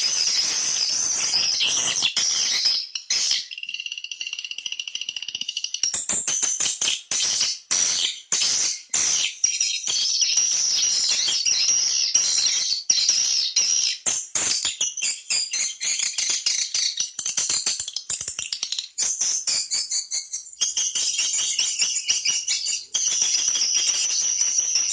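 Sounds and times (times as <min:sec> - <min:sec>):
swiftlet twittering chirps: 0:00.0 - 0:04.4, 0:19.5 - 0:24.9.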